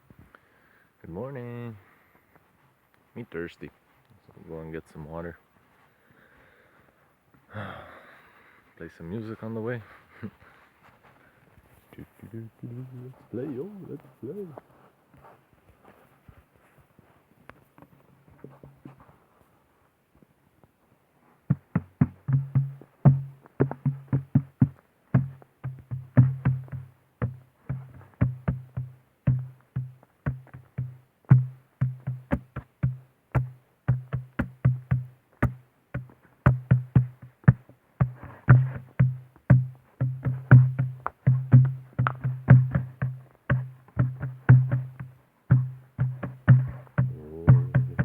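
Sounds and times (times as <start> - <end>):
percussive music: 45.6 - 48.0.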